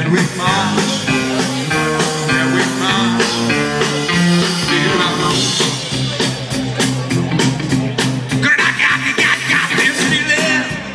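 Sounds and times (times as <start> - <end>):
live rock band playing: 0.0 - 10.9
steady drum beat: 0.0 - 10.9
melodic guitar lines: 0.1 - 8.4.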